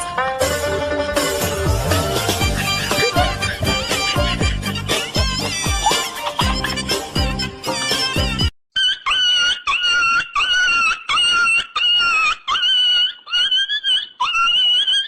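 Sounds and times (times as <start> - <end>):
high-pitched squeaky yelps: 8.8 - 15.0.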